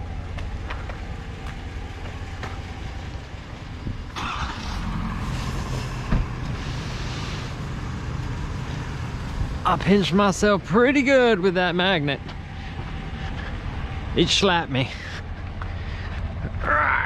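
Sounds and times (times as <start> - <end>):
vehicle engine rumbling: 0.0 - 17.0.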